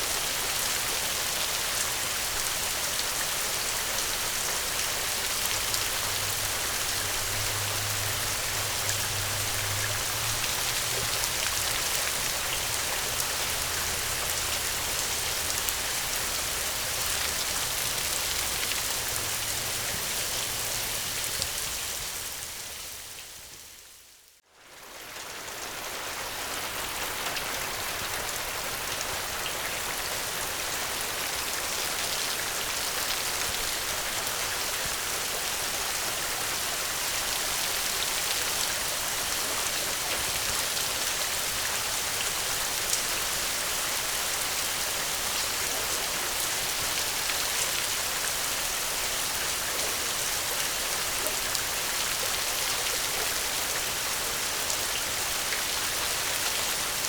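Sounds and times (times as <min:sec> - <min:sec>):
heavy rain hissing: 0:00.0 - 0:24.2.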